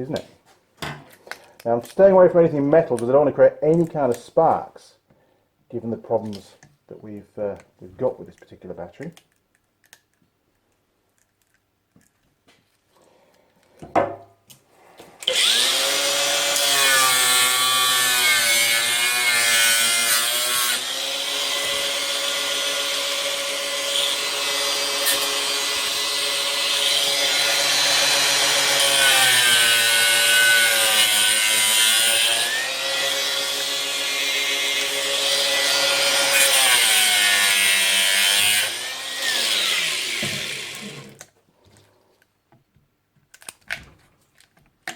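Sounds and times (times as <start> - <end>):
power tool cutting plastic: 15.2 - 41.3.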